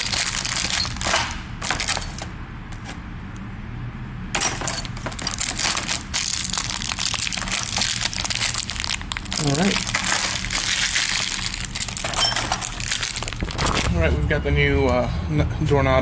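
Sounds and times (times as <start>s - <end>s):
small metal parts clinking: 0.0s - 2.3s, 4.3s - 13.4s.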